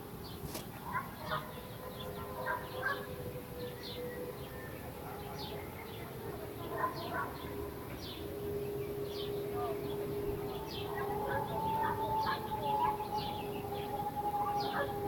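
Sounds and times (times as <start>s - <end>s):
birds chirping: 0.2s - 15.0s
steady droning tone in the sky: 4.3s - 15.0s.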